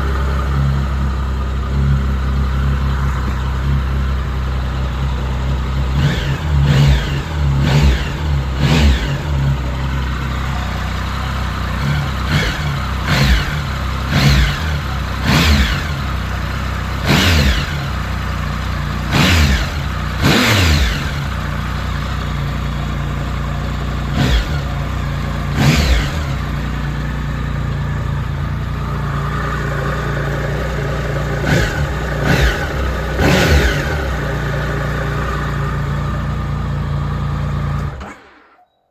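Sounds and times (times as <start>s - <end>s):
motorcycle engine idling and revving: 0.0s - 38.6s.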